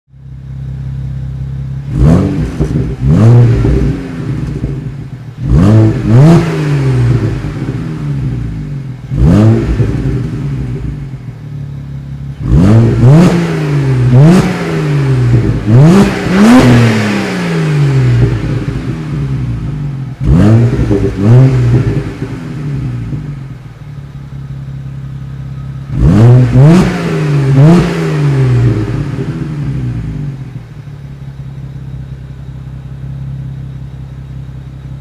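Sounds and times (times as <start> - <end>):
car engine idling and revving: 0.1 - 35.0.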